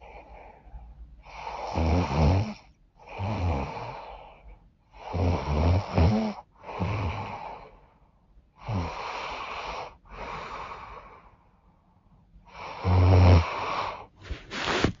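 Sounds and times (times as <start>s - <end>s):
noisy breaths: 0.0s - 1.8s, 3.0s - 5.2s, 6.4s - 15.0s
woman snoring: 1.3s - 4.2s, 5.0s - 7.7s, 8.6s - 11.1s, 12.5s - 14.1s.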